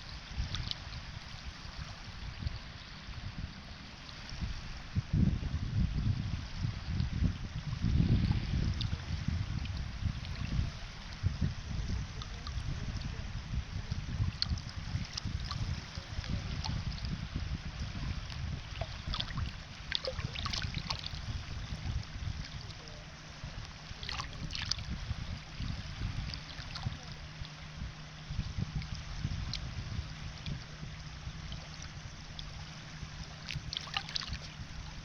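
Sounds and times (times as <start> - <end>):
faint steady hum: 0.0 - 35.0
sea waves washing: 6.4 - 35.0.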